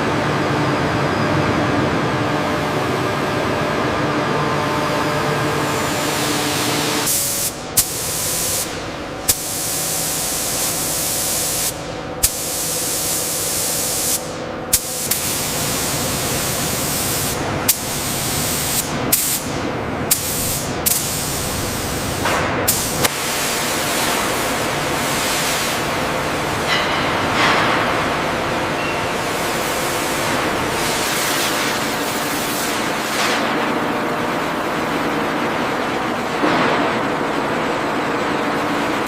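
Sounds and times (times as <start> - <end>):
loud spray hiss: 5.8 - 25.9.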